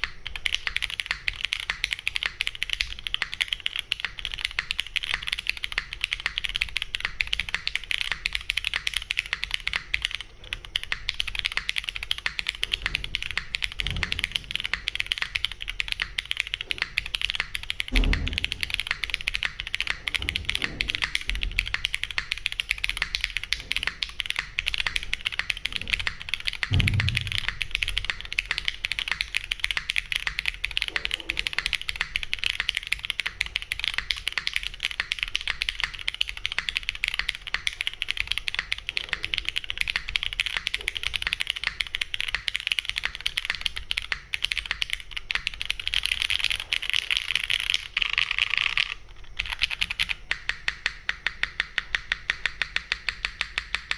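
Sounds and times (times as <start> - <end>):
fast typing on mechanical keyboard: 0.0 - 53.9
deeper thud of large key: 26.7 - 27.5.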